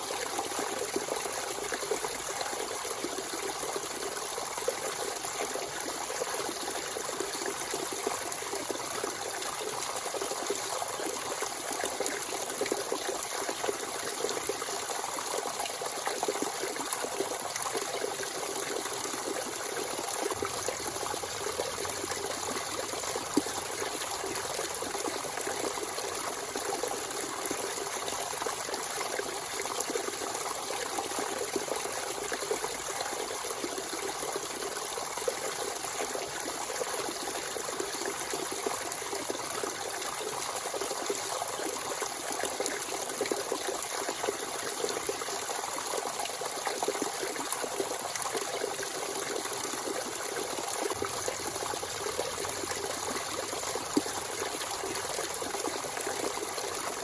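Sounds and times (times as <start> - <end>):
spring water flowing and trickling: 0.0 - 57.0.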